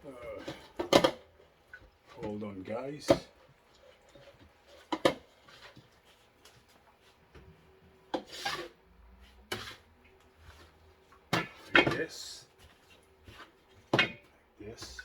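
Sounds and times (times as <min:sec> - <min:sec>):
knife scraping fish: 0:08.1 - 0:08.8, 0:09.5 - 0:09.9.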